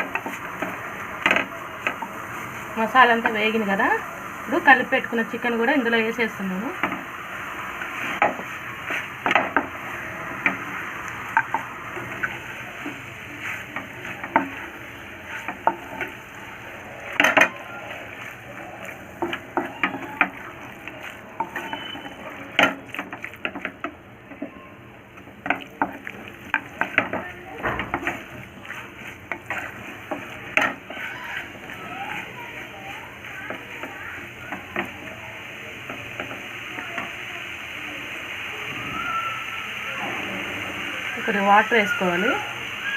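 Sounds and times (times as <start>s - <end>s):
food sizzling in a pan: 0.0s - 42.9s
spoon scraping a pan: 11.3s - 24.5s, 25.4s - 35.0s.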